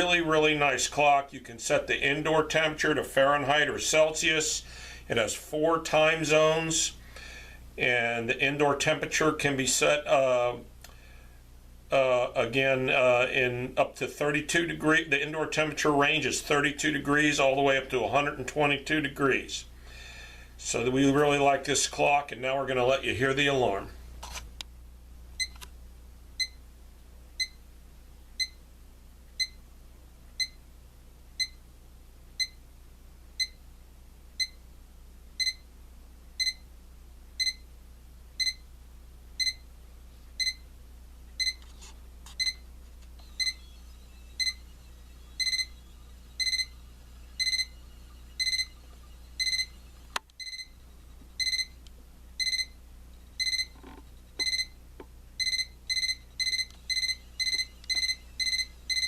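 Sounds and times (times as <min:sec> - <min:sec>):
alarm clock beeping: 0:35.4 - 0:35.6, 0:36.4 - 0:36.6, 0:37.4 - 0:37.6, 0:38.4 - 0:38.6, 0:39.4 - 0:39.6, 0:40.4 - 0:40.6, 0:41.4 - 0:41.6, 0:42.4 - 0:42.6, 0:43.2 - 0:50.8, 0:51.4 - 0:51.8, 0:52.4 - 0:52.8, 0:53.4 - 0:53.8, 0:54.4 - 0:54.8, 0:55.4 - 0:59.0.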